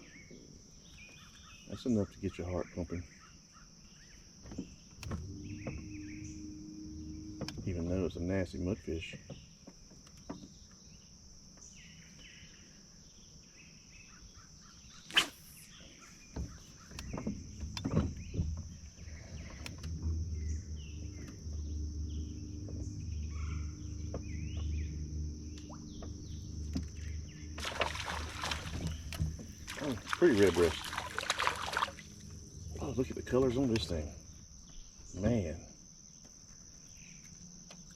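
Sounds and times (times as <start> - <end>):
birds chirping: 0.0 - 37.4
low rumbling hum: 5.0 - 7.9, 17.0 - 35.7.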